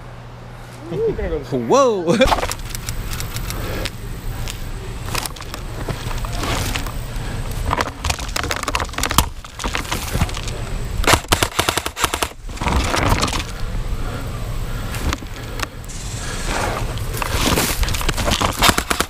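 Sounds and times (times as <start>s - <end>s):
airsoft guns firing: 11.0s - 12.4s, 18.6s - 19.0s.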